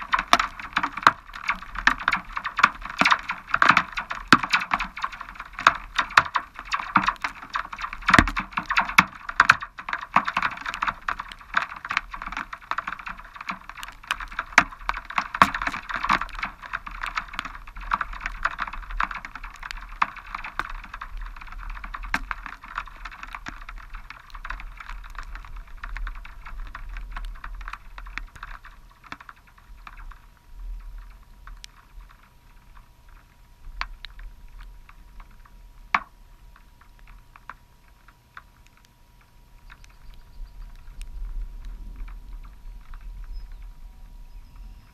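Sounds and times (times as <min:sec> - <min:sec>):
rain pattering on hard surface: 0:00.0 - 0:44.9.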